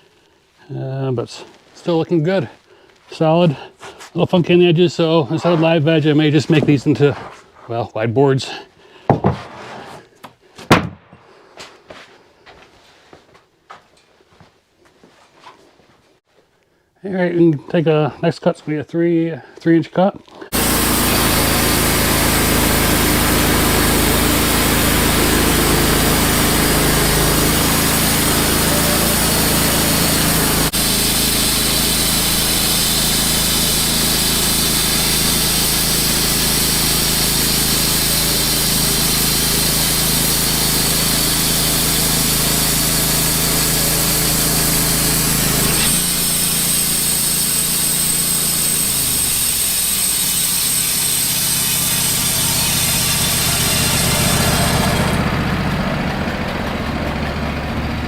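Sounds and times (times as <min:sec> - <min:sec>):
bandsaw mill sawing log: 0:03.1 - 0:07.8, 0:20.5 - 0:58.0.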